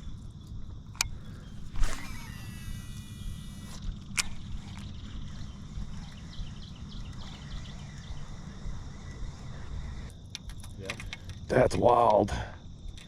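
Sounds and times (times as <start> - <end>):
sharp reel click: 1.0 - 4.9
fishing line whirring off reel: 1.4 - 5.0
steady low rumble: 2.5 - 10.3.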